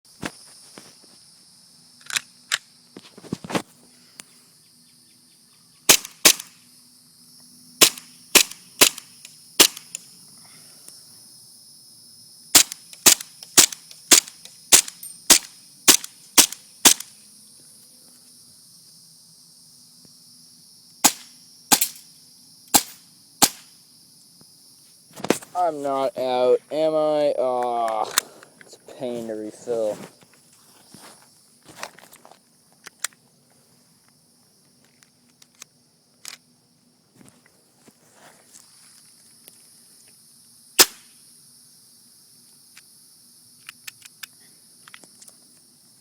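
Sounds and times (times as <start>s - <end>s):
airsoft pistol shots: 5.9s - 6.6s, 7.8s - 10.0s, 12.6s - 17.1s, 21.0s - 22.0s, 22.7s - 23.7s, 40.8s - 41.1s.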